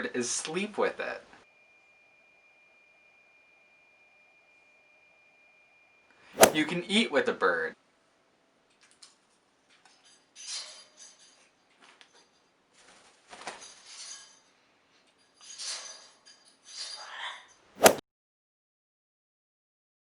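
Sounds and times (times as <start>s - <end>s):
sharp knock: 6.4s - 6.6s, 17.8s - 18.0s.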